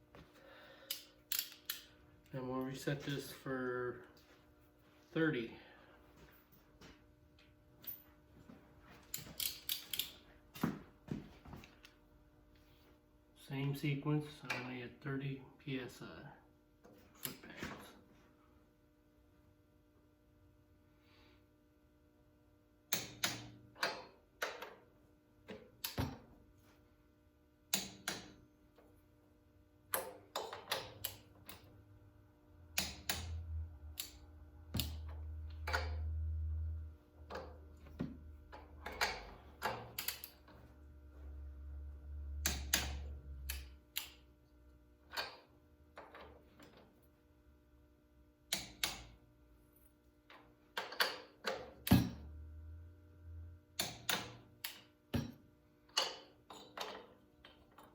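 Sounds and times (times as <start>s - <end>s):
torque wrench clicking: 0.9s - 1.9s
low hum: 31.1s - 39.6s, 40.2s - 44.8s, 52.0s - 53.8s.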